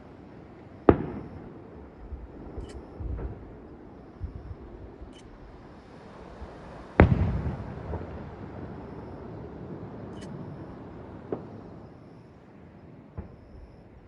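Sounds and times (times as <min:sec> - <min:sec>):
faint firework bang: 0:07.0 - 0:08.3
firework shell booming: 0:07.0 - 0:08.4.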